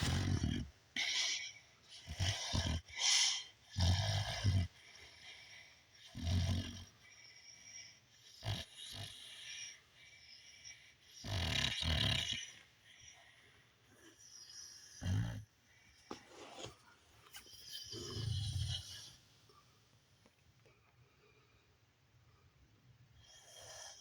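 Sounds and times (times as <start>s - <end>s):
breathy snorts: 0.0s - 7.0s
rattling snores: 0.0s - 7.0s, 8.2s - 9.8s, 11.1s - 12.7s, 14.1s - 15.5s, 17.6s - 19.2s.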